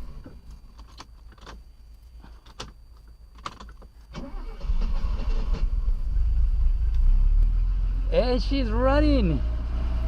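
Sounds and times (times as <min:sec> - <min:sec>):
car engine cranking and starting: 0:00.0 - 0:01.6, 0:02.4 - 0:10.0
low rumble: 0:05.4 - 0:10.0.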